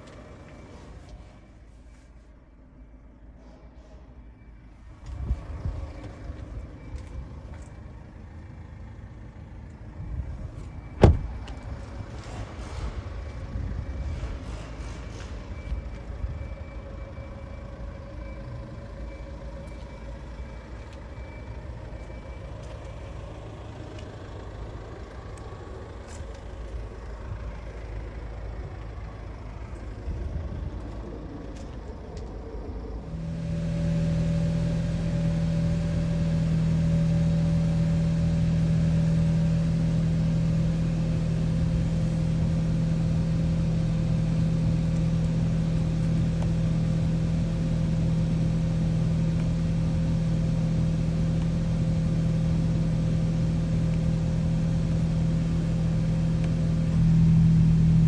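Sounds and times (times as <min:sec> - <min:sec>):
car engine idling: 0:04.7 - 0:58.0.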